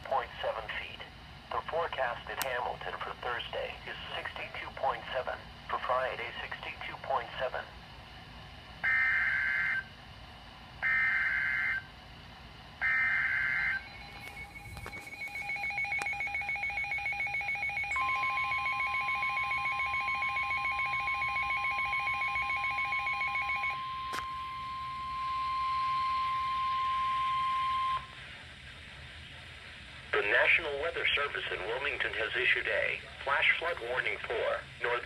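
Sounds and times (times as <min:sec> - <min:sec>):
steady warning tone: 0:08.7 - 0:28.2
radio alarm beeping rapidly: 0:08.8 - 0:09.9, 0:10.8 - 0:11.8, 0:12.8 - 0:28.0.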